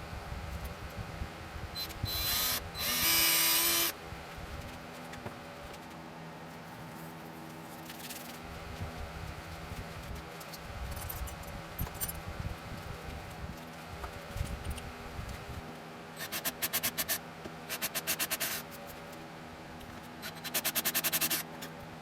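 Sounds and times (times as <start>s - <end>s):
steady low hum: 0.0s - 22.0s
small clinks and rattles: 10.9s - 12.2s.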